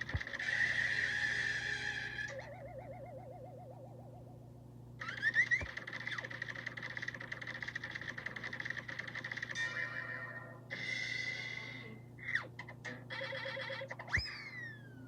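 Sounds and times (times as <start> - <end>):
wobbling warbling tone: 0.1 - 4.4.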